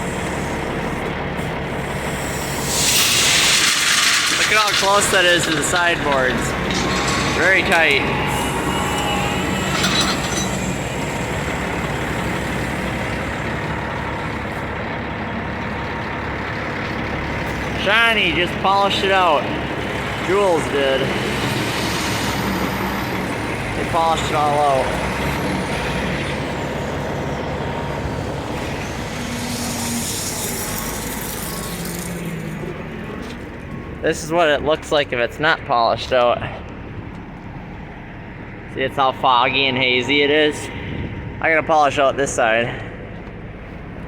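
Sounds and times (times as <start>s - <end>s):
diesel engine running: 0.0s - 44.0s
metallic rattle: 2.2s - 11.8s.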